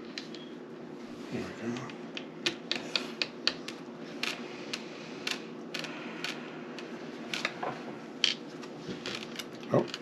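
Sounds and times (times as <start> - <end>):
low steady hum: 0.0 - 10.0.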